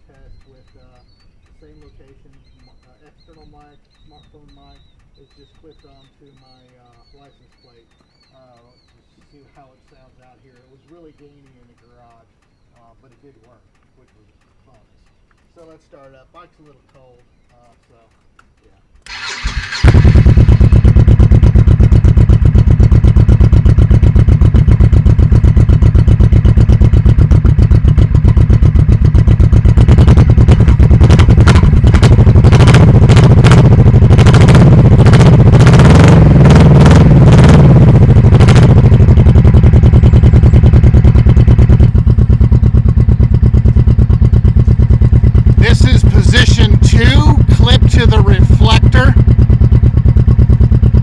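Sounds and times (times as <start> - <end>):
motorcycle engine idling and revving: 0.0 - 51.0
motorcycle engine starting: 0.0 - 51.0.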